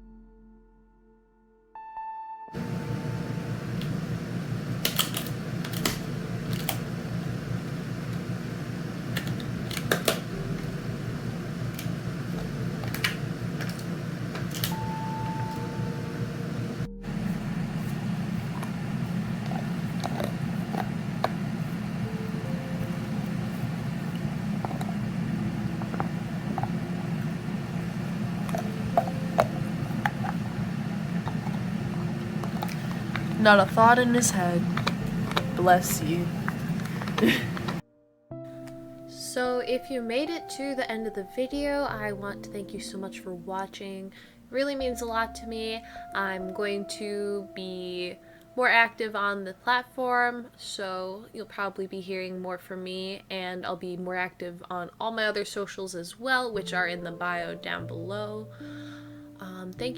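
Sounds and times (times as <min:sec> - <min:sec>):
small motor humming: 0:02.6 - 0:37.8.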